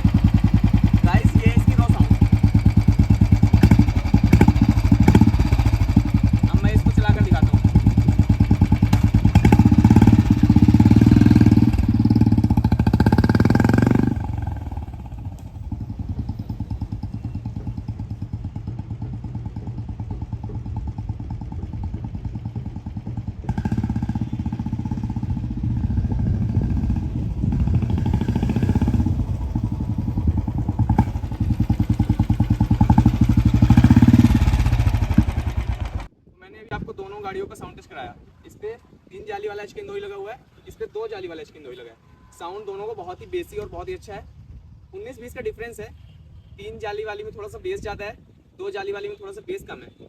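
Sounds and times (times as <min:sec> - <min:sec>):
motorcycle exhaust passing: 0:00.0 - 0:36.1.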